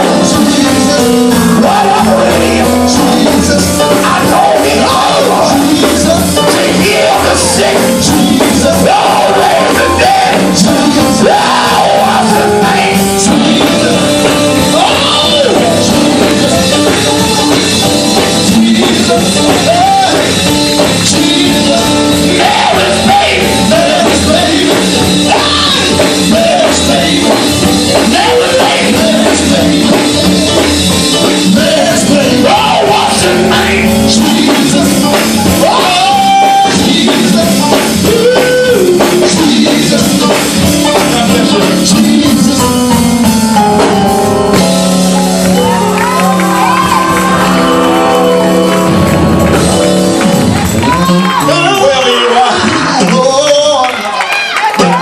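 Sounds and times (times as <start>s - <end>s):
voices singing: 0.0s - 43.9s
live gospel band music: 0.0s - 55.0s.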